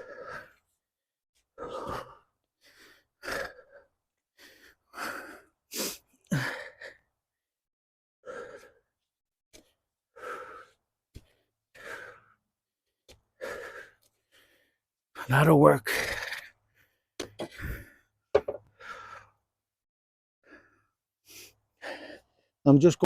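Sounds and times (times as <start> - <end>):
man breathing hard: 0.0 - 0.8, 1.4 - 7.3, 8.2 - 15.0, 15.9 - 19.6, 20.4 - 22.6.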